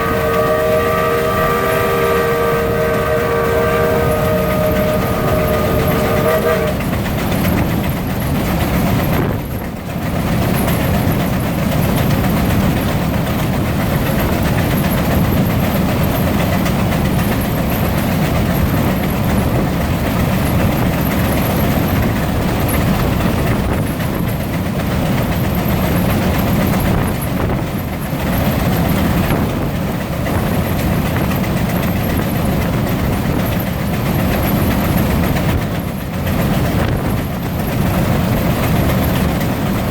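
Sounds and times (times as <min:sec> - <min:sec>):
steam whistle: 0:00.0 - 0:06.9
steam engine exhausts chuffing: 0:00.0 - 0:39.9.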